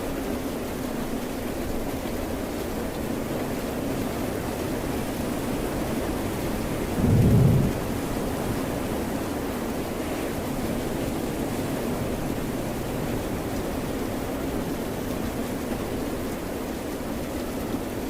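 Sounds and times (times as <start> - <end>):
rain hiss: 3.0 - 18.0
low rumble: 7.0 - 8.2.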